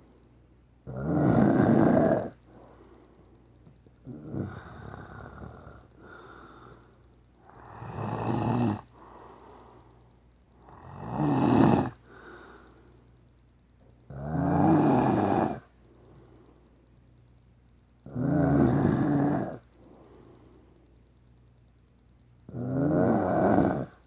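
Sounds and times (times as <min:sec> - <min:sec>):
man snoring: 0:00.9 - 0:02.4, 0:04.0 - 0:06.7, 0:07.4 - 0:09.6, 0:10.6 - 0:12.6, 0:14.1 - 0:15.7, 0:18.1 - 0:19.6, 0:22.5 - 0:24.0.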